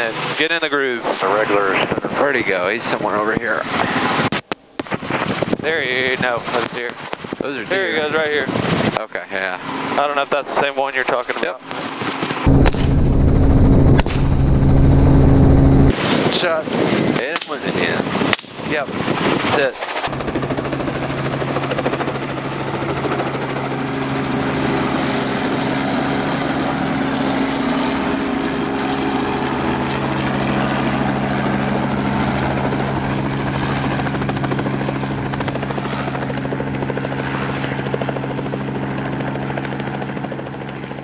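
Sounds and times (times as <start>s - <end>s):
helicopter engine and rotor: 0.0s - 4.3s, 5.0s - 41.0s.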